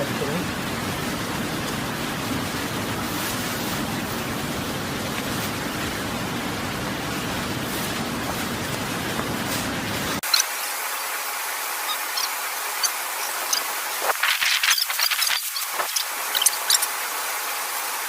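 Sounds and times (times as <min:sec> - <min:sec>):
water rushing through weir: 0:00.0 - 0:18.0.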